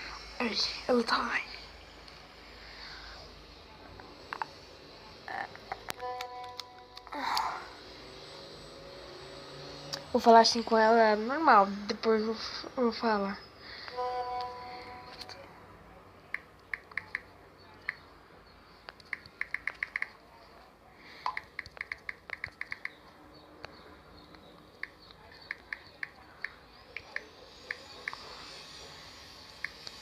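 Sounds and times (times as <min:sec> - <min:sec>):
phone keyboard clicking: 0:16.3 - 0:17.2, 0:19.0 - 0:20.2, 0:21.2 - 0:23.0.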